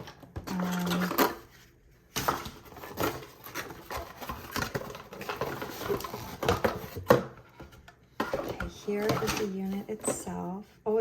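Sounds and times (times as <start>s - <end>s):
plastic packaging crinkling: 0.0s - 7.0s.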